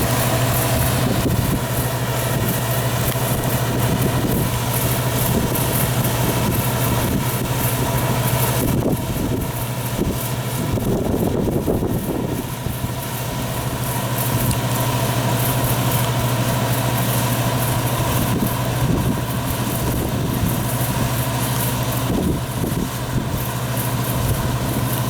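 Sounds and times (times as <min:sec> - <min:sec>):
farm machine engine humming: 0:00.0 - 0:25.0.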